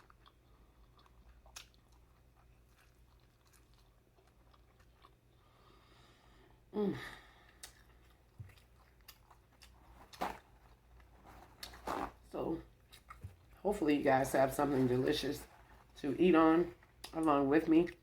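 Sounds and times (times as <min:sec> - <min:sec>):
person chewing wetly: 0:00.0 - 0:06.1, 0:07.2 - 0:13.6, 0:16.8 - 0:17.3.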